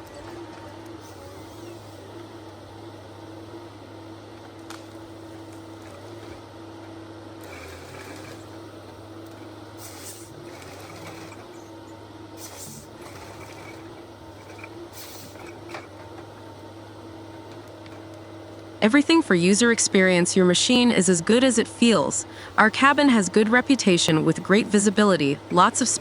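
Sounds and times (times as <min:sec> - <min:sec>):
diesel engine droning: 0:00.0 - 0:26.0
hissing bursts: 0:12.4 - 0:12.9.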